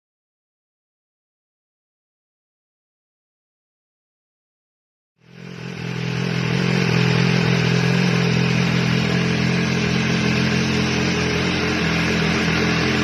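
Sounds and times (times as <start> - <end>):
motorcycle engine idling: 5.2 - 13.0.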